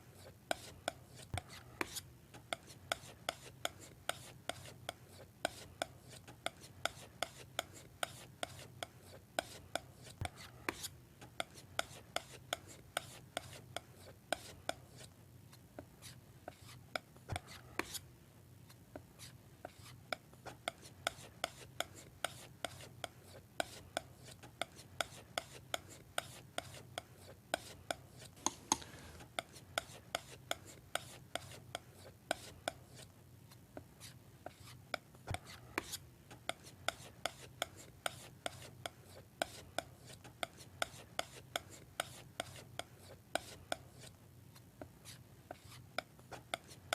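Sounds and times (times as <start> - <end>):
palette knife scraping paint: 0.0 - 18.1, 18.7 - 46.9.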